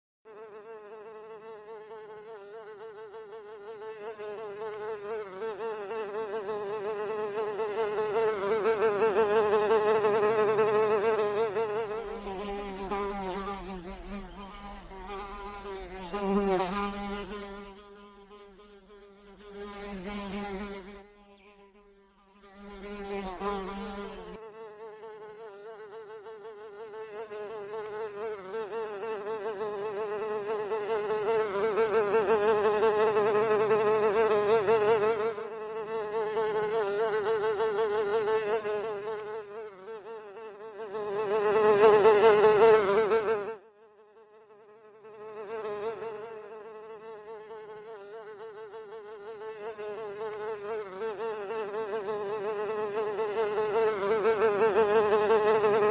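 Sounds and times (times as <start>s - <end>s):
fly buzzing in flight: 0.3s - 55.9s.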